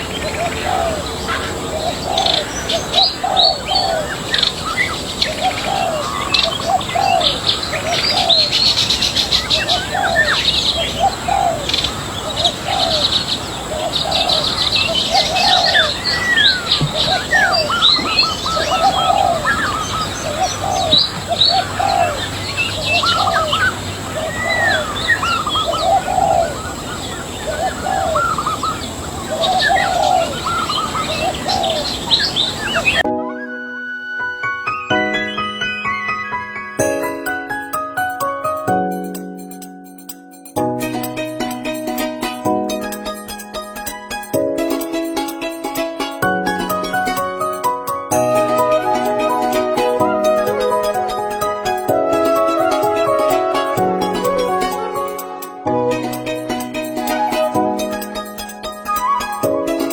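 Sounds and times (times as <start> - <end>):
birds chirping and twittering: 0.0 - 33.1, 34.7 - 37.3, 40.4 - 59.9
low repeating bird call: 0.0 - 33.6.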